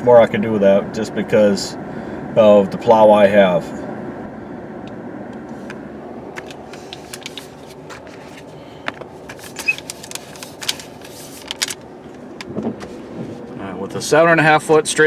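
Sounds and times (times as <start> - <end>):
truck engine idling: 0.0 - 14.2
sharp clicks and rattles: 6.3 - 12.9.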